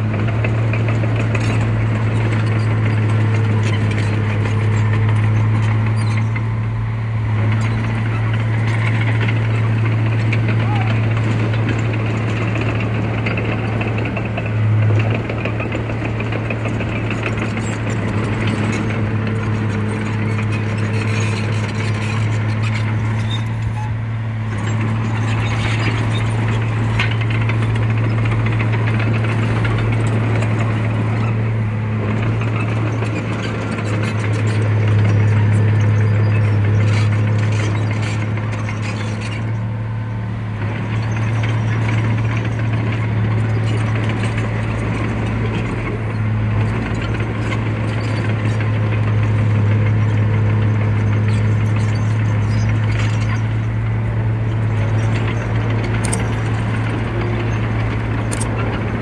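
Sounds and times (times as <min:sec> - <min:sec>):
diesel engine droning: 0:00.0 - 0:59.0.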